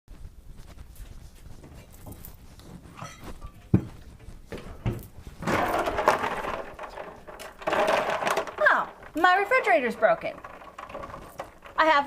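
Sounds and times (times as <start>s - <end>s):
rough noisy sound: 5.4s - 12.0s.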